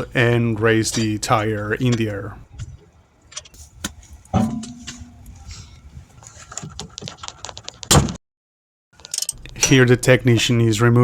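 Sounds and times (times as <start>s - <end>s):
loud metal clatter: 4.4s - 5.3s
tools clicking and clinking: 9.0s - 9.4s.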